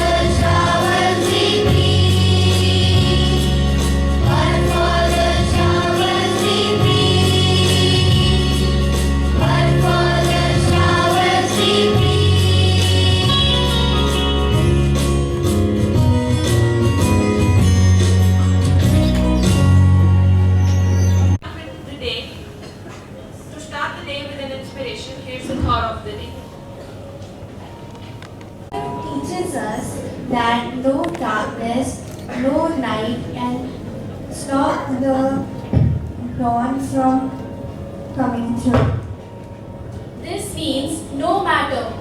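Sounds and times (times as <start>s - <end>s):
choir singing: 0.0s - 14.3s
music with bass and beat: 12.1s - 21.4s.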